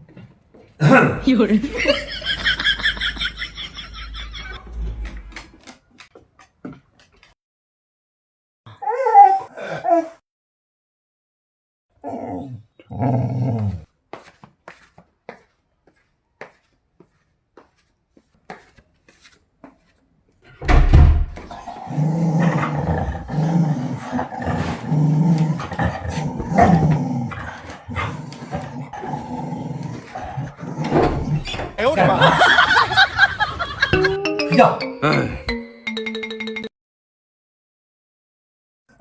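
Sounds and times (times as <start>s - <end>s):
dog growling: 12.0s - 13.9s, 21.4s - 34.2s.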